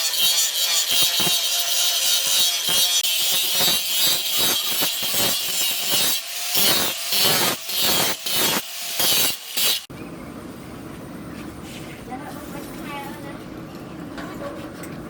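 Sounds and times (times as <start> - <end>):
file rasping on steel blade: 0.0 - 9.9.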